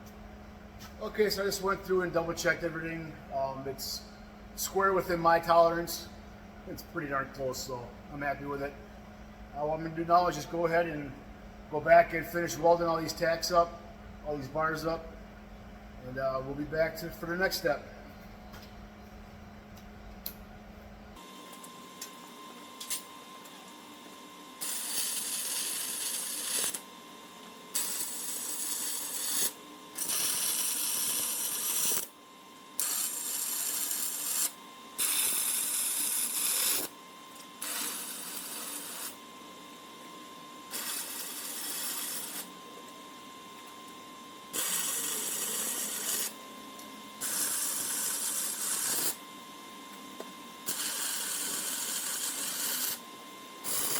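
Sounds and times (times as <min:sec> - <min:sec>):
electric welding: 0:21.2 - 0:27.0, 0:27.7 - 0:39.3, 0:40.6 - 0:42.6, 0:44.5 - 0:46.5, 0:47.2 - 0:49.3, 0:50.6 - 0:53.9.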